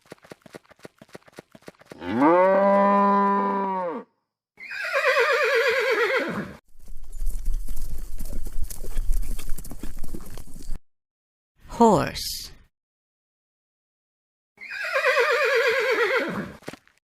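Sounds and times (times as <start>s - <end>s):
hoof clip-clops: 0.0s - 2.8s, 6.7s - 10.8s, 16.5s - 17.0s
cow mooing: 2.0s - 4.1s
horse whinnying: 4.6s - 6.6s, 14.6s - 16.6s.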